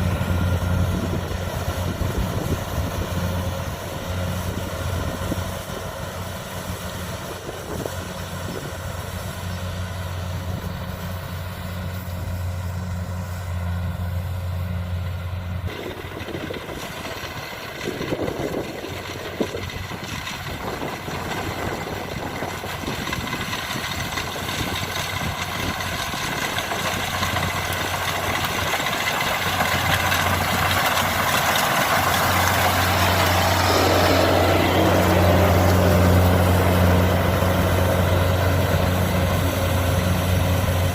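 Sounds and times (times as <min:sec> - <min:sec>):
diesel engine humming: 0:00.0 - 0:40.9
machinery rattling: 0:15.5 - 0:40.9.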